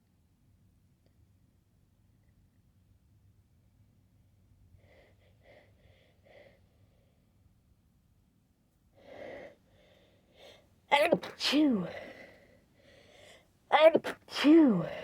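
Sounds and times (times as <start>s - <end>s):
person's hitching breaths: 11.3s - 13.5s.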